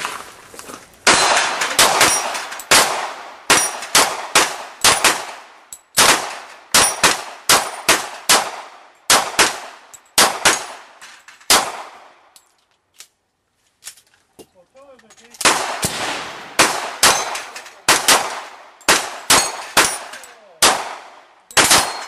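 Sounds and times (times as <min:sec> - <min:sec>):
gunshots echoing: 0:01.0 - 0:12.2, 0:15.4 - 0:22.0.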